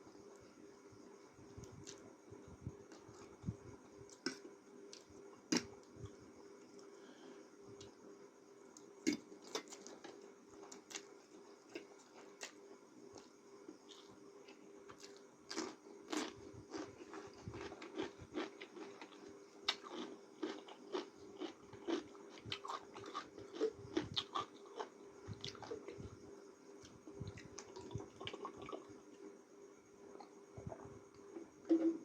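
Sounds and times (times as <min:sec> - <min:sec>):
faint steady hum: 0:00.0 - 0:32.0
person chewing noodles: 0:13.9 - 0:26.0, 0:26.8 - 0:28.9.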